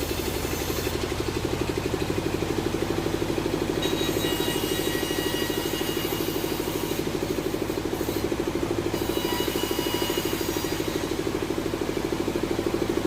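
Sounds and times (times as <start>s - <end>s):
sawmill motor drone: 0.0s - 13.0s.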